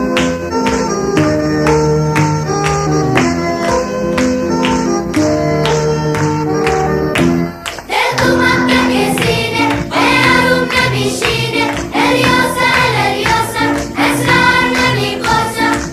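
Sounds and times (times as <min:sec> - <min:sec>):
background music with singing voices: 0:06.1 - 0:15.9.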